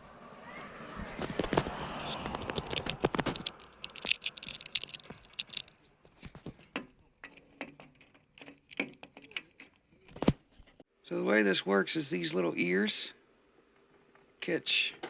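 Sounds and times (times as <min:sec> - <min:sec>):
metallic clicks and scrapes of lock: 0:01.2 - 0:10.4.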